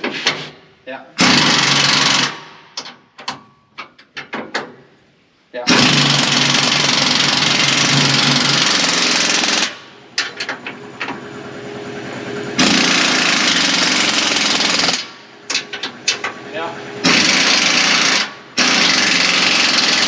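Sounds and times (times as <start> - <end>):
impact wrench hammering: 5.7 - 11.2, 12.6 - 16.4, 17.0 - 20.0.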